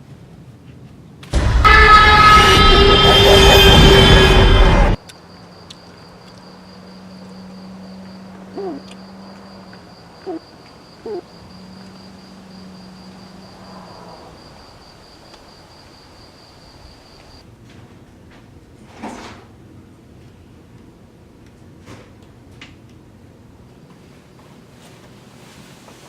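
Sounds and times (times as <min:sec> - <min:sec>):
loud horn-like blare: 0:01.4 - 0:05.0
crickets chirring: 0:05.0 - 0:17.4
owl hoots: 0:08.5 - 0:09.1, 0:10.2 - 0:11.4.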